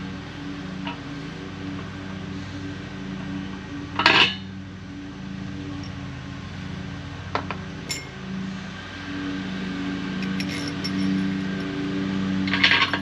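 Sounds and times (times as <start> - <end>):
ringing metallic clinks: 7.9 - 8.2, 10.2 - 11.7.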